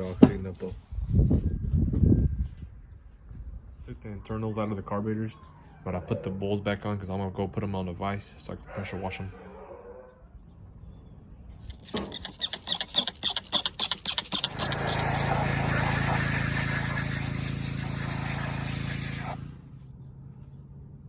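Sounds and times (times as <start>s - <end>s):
pressure washer spraying: 11.6s - 19.6s.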